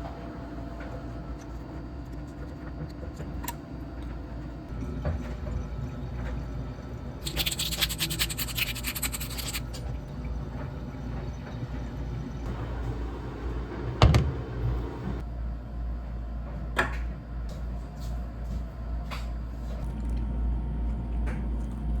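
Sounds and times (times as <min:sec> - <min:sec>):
low steady hum: 0:00.0 - 0:15.2
rapid scrubbing strokes: 0:07.2 - 0:09.8.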